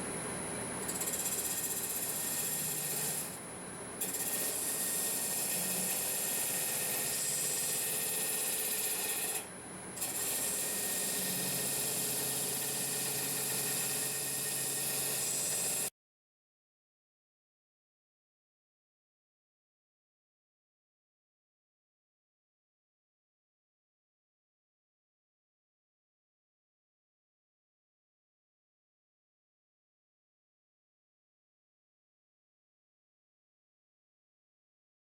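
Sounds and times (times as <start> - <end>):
lathe tool scraping wood: 0.8 - 3.4, 4.0 - 15.9.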